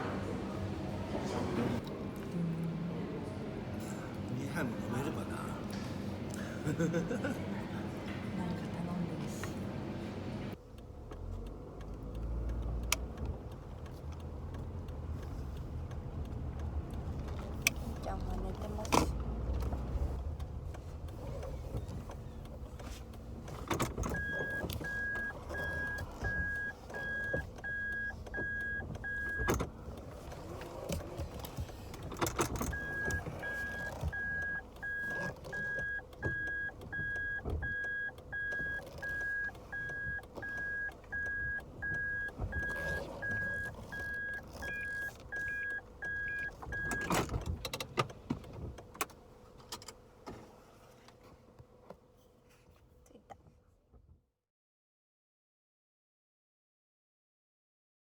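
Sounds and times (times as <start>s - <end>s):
car rumble: 0.0s - 51.6s
car warning beeper: 23.7s - 29.7s, 32.1s - 47.3s.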